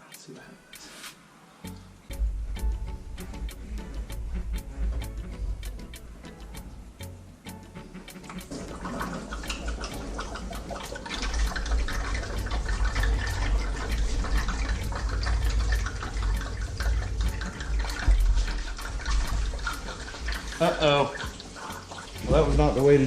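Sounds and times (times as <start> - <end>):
coolant pouring and splashing: 8.4 - 23.0.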